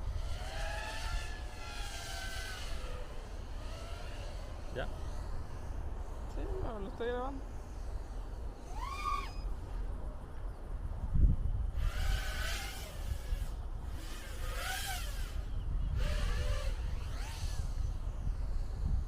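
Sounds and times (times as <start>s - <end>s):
steady low rumble: 0.0s - 0.5s
quadcopter motors whining: 0.0s - 19.0s.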